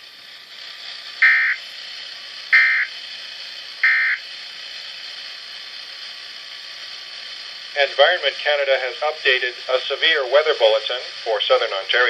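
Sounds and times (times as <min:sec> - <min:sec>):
steady radio hiss: 0:00.0 - 0:12.0
short electronic beeps: 0:01.2 - 0:01.6, 0:02.6 - 0:02.9, 0:03.8 - 0:04.2.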